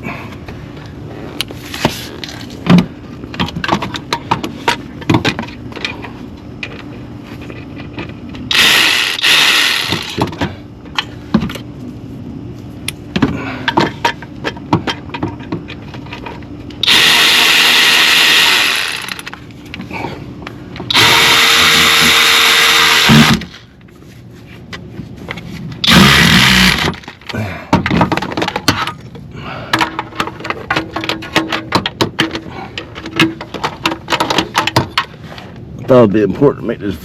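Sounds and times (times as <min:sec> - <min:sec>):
handheld power tool running: 0:08.5 - 0:10.3, 0:16.8 - 0:19.4, 0:20.9 - 0:23.6, 0:25.8 - 0:27.1.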